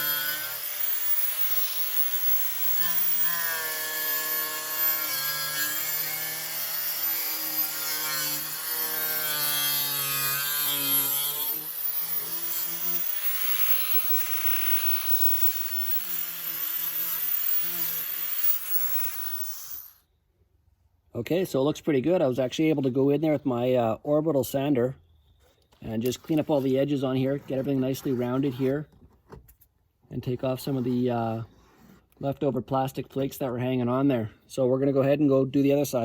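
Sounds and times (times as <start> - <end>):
circular saw cutting plastic: 0.0 - 20.0.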